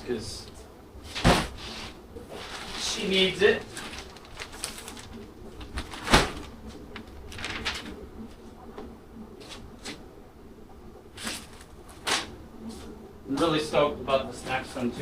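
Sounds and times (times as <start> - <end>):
packaging rustling: 2.3 - 8.0.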